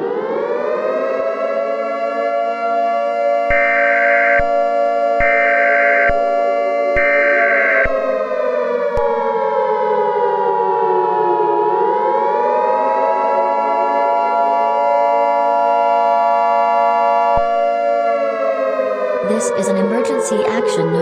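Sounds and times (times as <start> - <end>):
civil defense siren wailing: 0.0 - 21.0.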